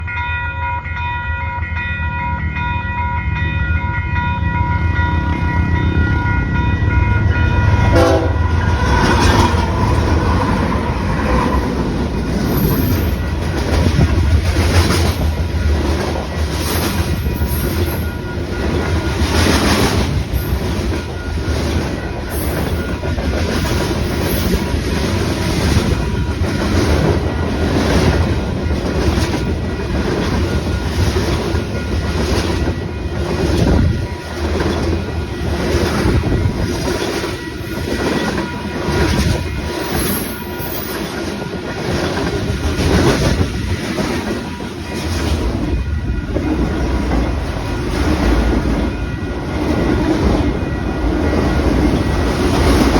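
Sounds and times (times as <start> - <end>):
freight train rumbling past: 0.0 - 52.9
locomotive air horn chord: 7.8 - 8.6.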